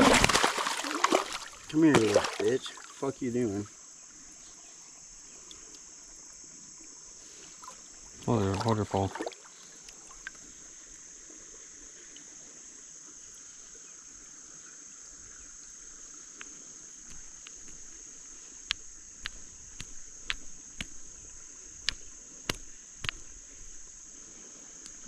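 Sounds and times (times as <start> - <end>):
crickets droning: 0.0 - 25.0
sharp irregular clicks and taps: 17.1 - 18.0, 18.6 - 23.9.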